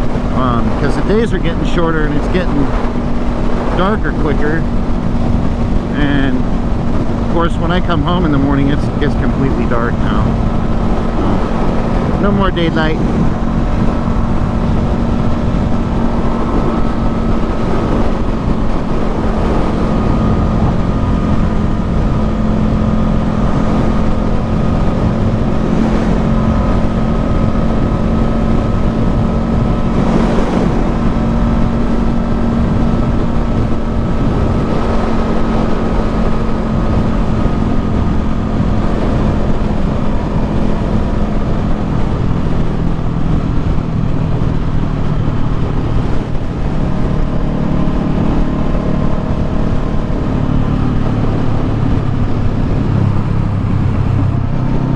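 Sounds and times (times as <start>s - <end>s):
motorcycle engine cruising: 0.0s - 54.9s
wind rush: 0.0s - 54.9s.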